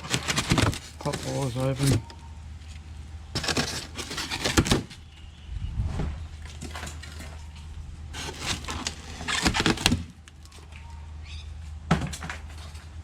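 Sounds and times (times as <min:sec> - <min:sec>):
cardboard box crackling and rustling: 0:00.0 - 0:02.1, 0:03.4 - 0:05.1, 0:08.1 - 0:10.2.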